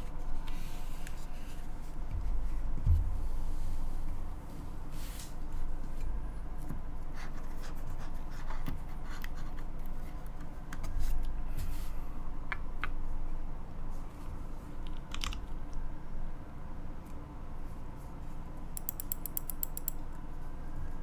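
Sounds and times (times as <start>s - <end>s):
keyboard keystrokes: 14.8s - 15.5s, 18.8s - 20.0s.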